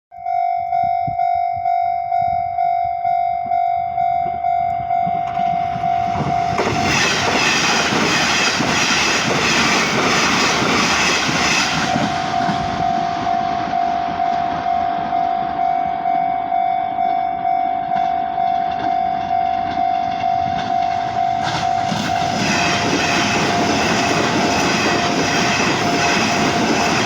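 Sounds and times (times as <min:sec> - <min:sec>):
level crossing alarm dings: 0:00.1 - 0:06.6, 0:12.1 - 0:22.2
train wheels clattering over rail joints: 0:05.3 - 0:15.2, 0:18.0 - 0:27.0.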